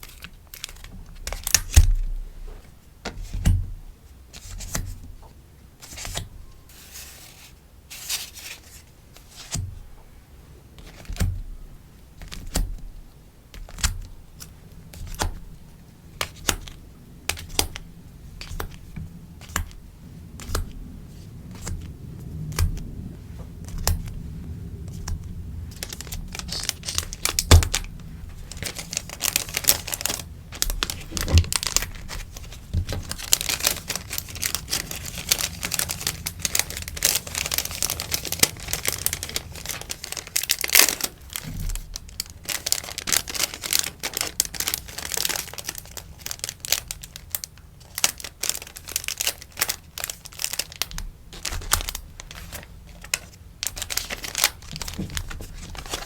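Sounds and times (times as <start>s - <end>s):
sticker packaging crinkling: 0.0s - 2.1s, 13.5s - 22.9s, 23.6s - 56.0s.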